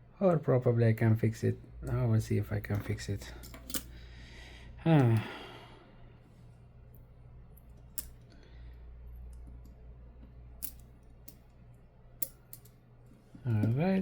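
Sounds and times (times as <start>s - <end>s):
low steady hum: 0.0s - 14.0s
small tools clicking and tapping: 10.6s - 11.5s, 12.2s - 12.8s, 13.5s - 13.8s.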